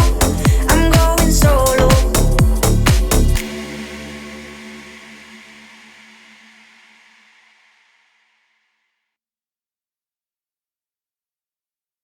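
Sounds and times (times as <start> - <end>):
electronic music sustained tones: 0.0 - 7.6.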